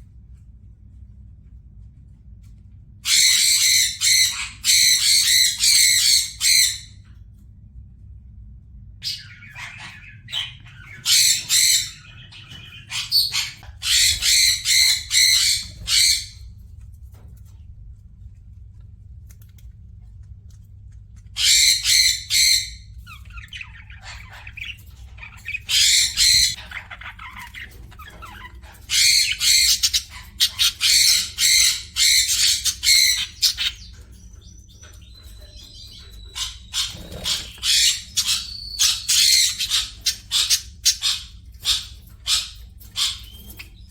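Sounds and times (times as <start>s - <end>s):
bird squawking: 9.0s - 16.4s, 21.4s - 34.0s, 35.1s - 43.9s.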